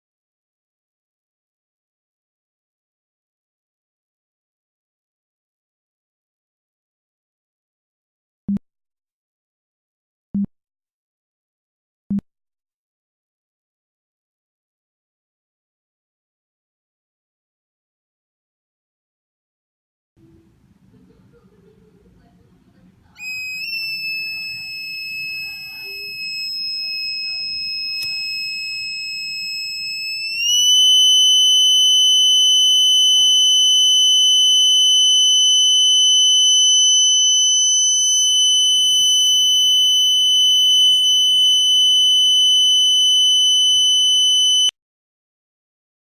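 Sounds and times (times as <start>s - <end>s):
fire alarm buzzer tone: 23.2s - 44.7s.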